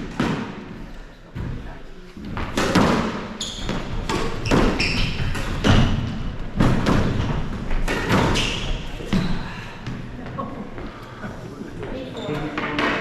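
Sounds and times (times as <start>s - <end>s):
court shoes squeaking: 2.2s - 10.4s, 11.9s - 12.8s
racquets striking ball: 2.4s - 9.2s.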